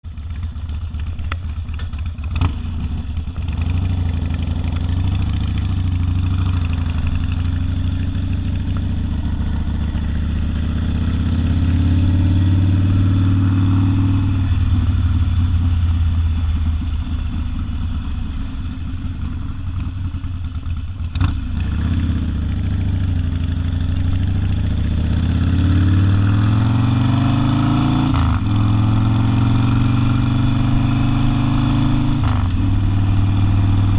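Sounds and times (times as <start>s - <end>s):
motorcycle accelerating: 0.1s - 33.9s.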